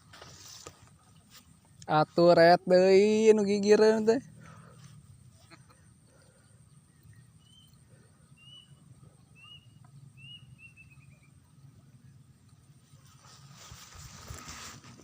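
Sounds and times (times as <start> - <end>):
faint bird chirps: 4.2 - 13.0.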